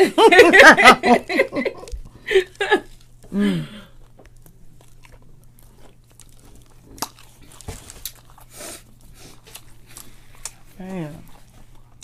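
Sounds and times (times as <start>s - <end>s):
chewing and lip-smacking: 3.9s - 12.0s.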